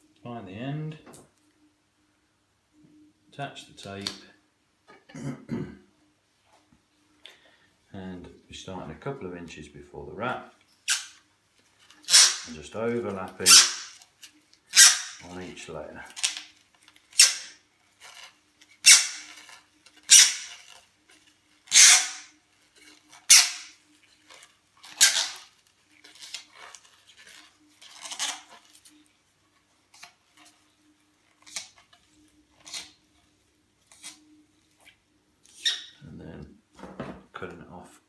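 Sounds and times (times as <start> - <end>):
tape peeling off roll: 10.8 - 11.2, 11.9 - 15.5, 16.1 - 29.1.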